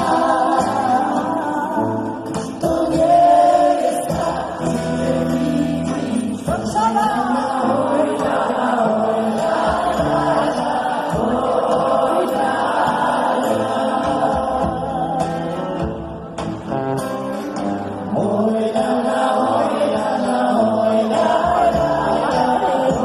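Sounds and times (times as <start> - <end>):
live band playing with singing: 0.0 - 23.0.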